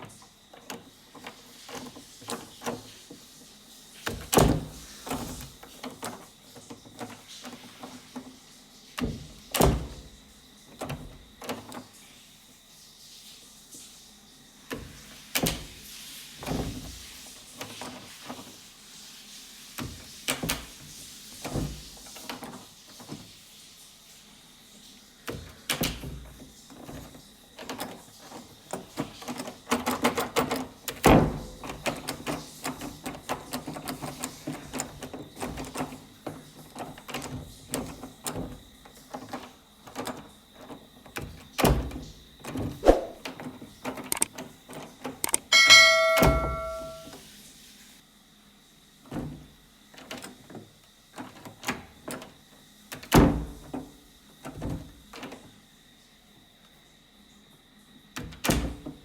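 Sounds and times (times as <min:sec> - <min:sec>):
doors opening and shutting: 0:04.0 - 0:08.3, 0:09.0 - 0:12.0, 0:25.3 - 0:47.2, 0:51.2 - 0:55.5, 0:58.2 - 0:59.0.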